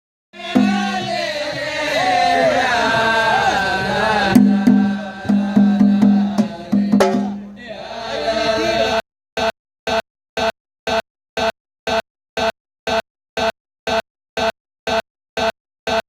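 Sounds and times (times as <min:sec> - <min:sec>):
group chanting: 0:00.4 - 0:09.0
frame drum strikes: 0:00.6 - 0:01.7, 0:04.3 - 0:07.6.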